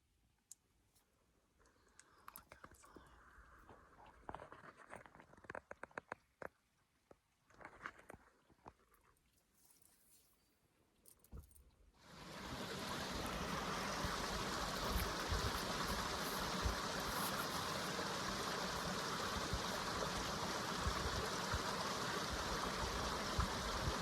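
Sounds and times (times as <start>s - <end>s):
water flowing in a stream: 11.9s - 24.0s.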